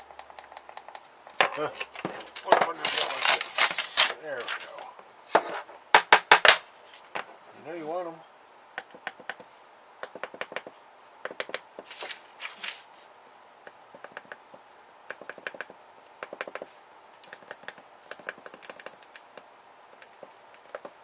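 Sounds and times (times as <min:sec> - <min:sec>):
scraping rustles: 0:01.3 - 0:05.8, 0:11.8 - 0:13.1.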